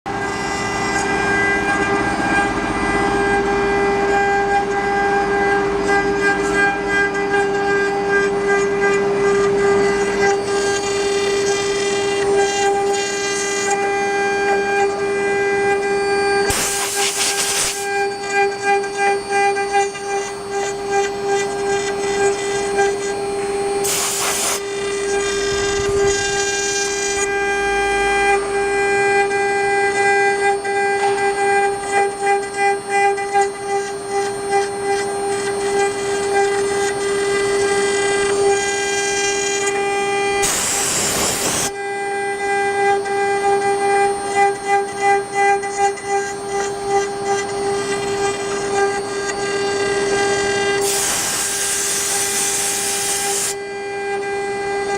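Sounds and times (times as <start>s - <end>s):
spindle motor whining: 0.1s - 54.9s
short hissing bursts: 16.5s - 17.8s, 23.8s - 24.6s.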